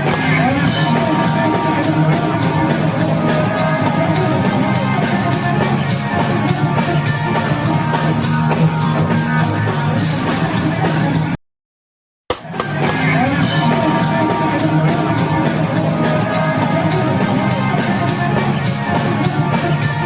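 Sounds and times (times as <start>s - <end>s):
distorted electric guitar: 0.0s - 10.8s
drum kit backing track: 0.0s - 11.3s, 12.3s - 20.0s.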